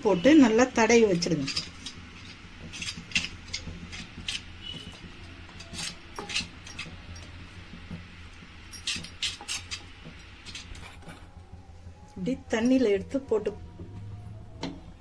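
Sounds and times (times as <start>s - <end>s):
kitchen utensils clicking: 1.1s - 7.4s, 8.7s - 11.3s.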